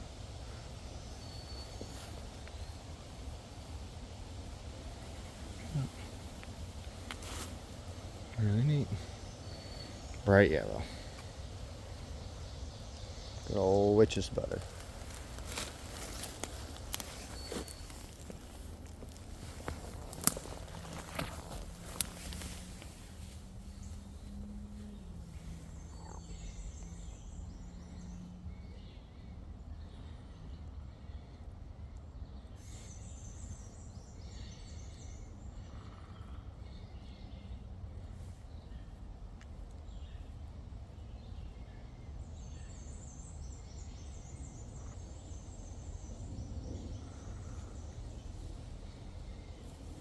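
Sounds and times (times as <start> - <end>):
songbird twittering: 0.0 - 31.2
faint birdsong chirps: 0.0 - 50.0
low hum and rumble: 0.0 - 50.0.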